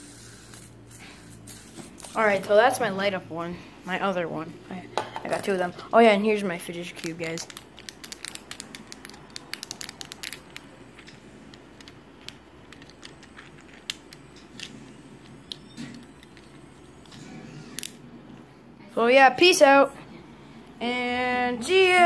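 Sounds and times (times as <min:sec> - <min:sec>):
fidget cube clicking: 0:06.9 - 0:18.0.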